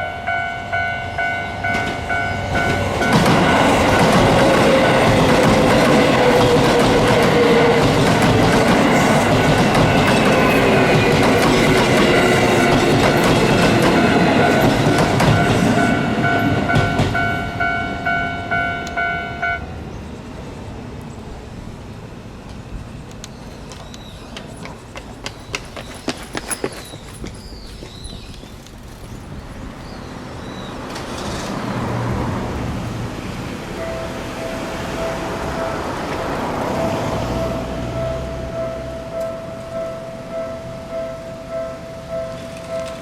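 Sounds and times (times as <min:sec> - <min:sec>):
crossing warning bell ringing: 0:00.0 - 0:19.8, 0:33.7 - 0:43.0
street background: 0:00.0 - 0:43.0
train wheel clatter: 0:01.6 - 0:17.3.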